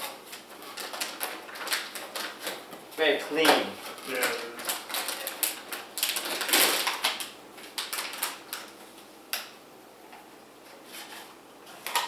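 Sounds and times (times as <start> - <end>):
packaging rustling: 0.0 - 8.8.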